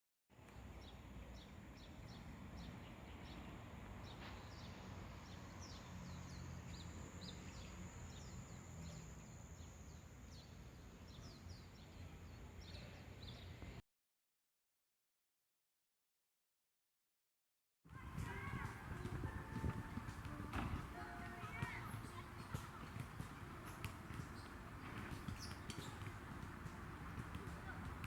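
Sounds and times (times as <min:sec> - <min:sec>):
birds chirping faintly: 0:17.9 - 0:28.0.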